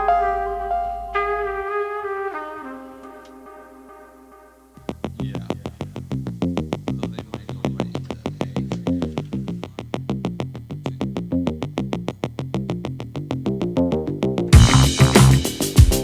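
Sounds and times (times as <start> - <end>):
synthesizer music with plucked notes: 0.0 - 5.0, 12.7 - 16.0.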